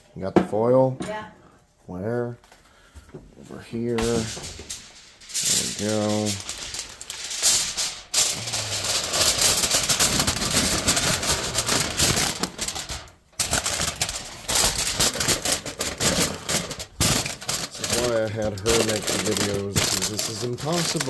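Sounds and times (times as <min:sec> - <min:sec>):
aluminium foil crinkling: 0:03.6 - 0:21.0.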